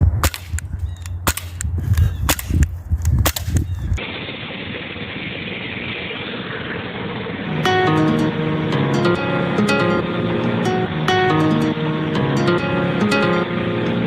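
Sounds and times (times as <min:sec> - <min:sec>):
air gun shots: 0:00.0 - 0:06.7
low rumble: 0:00.0 - 0:09.3.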